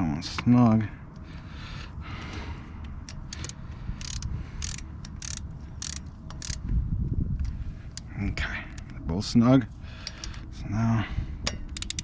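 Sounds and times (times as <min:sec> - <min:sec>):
ratchet wrench clicking: 0:03.0 - 0:06.6, 0:07.4 - 0:08.1, 0:11.5 - 0:12.0.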